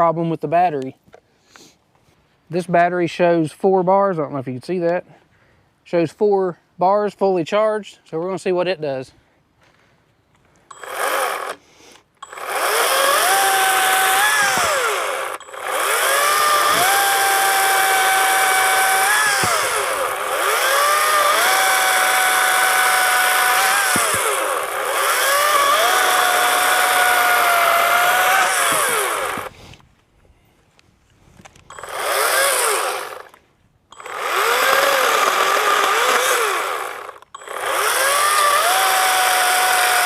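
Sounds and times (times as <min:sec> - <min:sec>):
cordless chainsaw motor whine: 0:10.7 - 0:29.8, 0:31.7 - 0:40.0.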